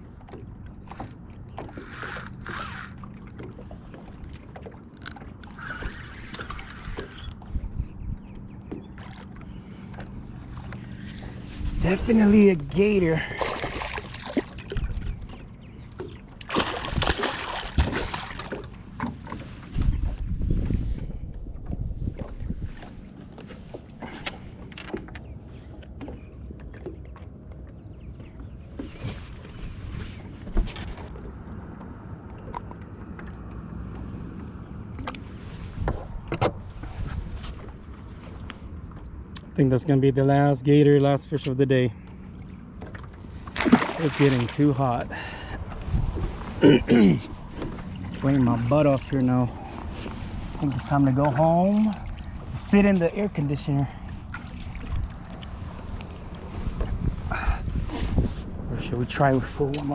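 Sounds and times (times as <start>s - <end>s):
wind rumble on microphone: 0.0s - 13.4s, 14.6s - 24.7s, 28.0s - 40.2s, 45.0s - 59.9s
fishing tackle clicks: 0.9s - 3.6s
water splashing: 13.2s - 15.0s, 16.0s - 18.9s, 42.7s - 44.8s, 46.2s - 57.0s.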